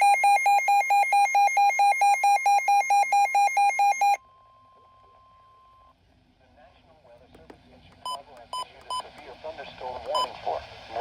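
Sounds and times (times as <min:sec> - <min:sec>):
alarm beeping rapidly: 0:00.0 - 0:04.2
faint steady warning tone: 0:00.0 - 0:06.0.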